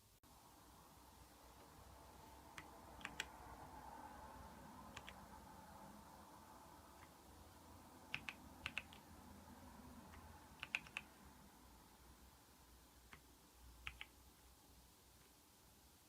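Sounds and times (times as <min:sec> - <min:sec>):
mechanical keyboard keystrokes: 0:02.6 - 0:03.3, 0:04.9 - 0:05.2, 0:08.1 - 0:09.1, 0:10.2 - 0:11.1, 0:13.8 - 0:14.1.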